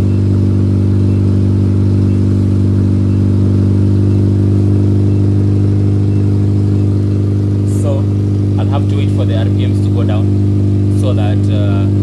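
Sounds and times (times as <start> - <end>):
car engine fast idle: 0.0 - 12.0.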